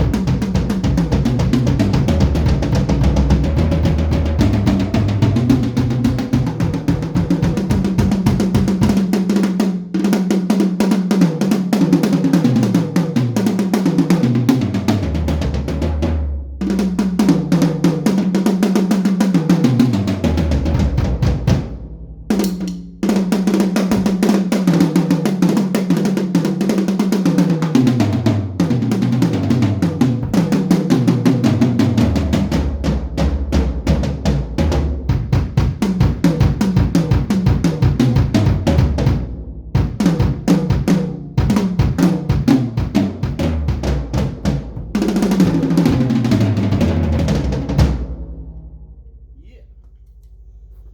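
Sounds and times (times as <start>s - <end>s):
kick drum: 0.0s - 9.0s, 30.2s - 30.6s, 33.0s - 45.6s
snare drum: 0.0s - 48.4s
drum fills on toms: 0.0s - 48.8s.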